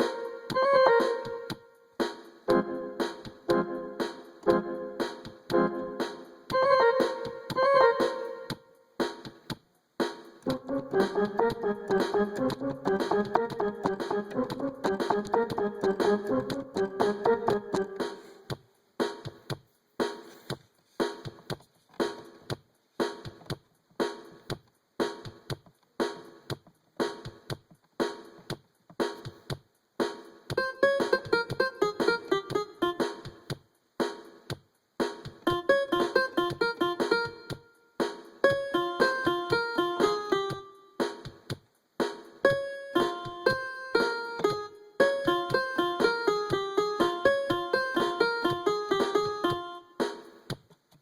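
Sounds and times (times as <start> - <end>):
higher keyboard melody: 0.0 - 1.8, 2.5 - 8.8, 10.5 - 18.5, 42.4 - 50.0.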